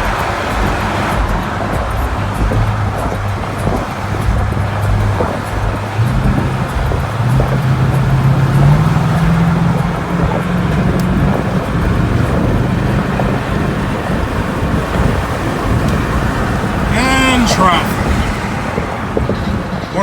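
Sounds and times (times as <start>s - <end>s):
car engine drone: 0.0s - 20.0s
road noise: 0.0s - 20.0s.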